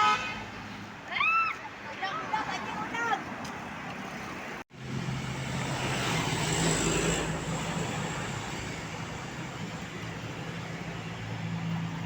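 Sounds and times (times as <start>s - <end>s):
tyre and road noise: 0.0s - 12.0s
bus engine hum: 4.8s - 12.0s.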